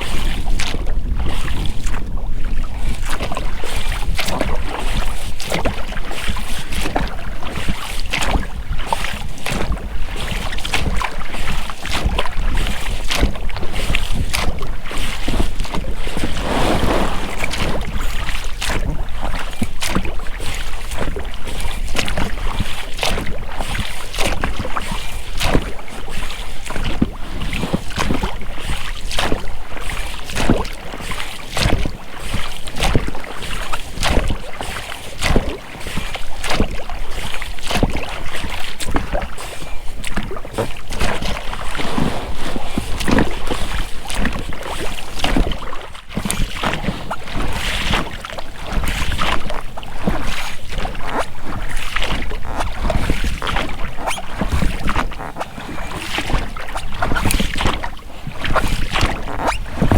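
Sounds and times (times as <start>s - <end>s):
oar blades splashing in water: 16.0s - 19.0s.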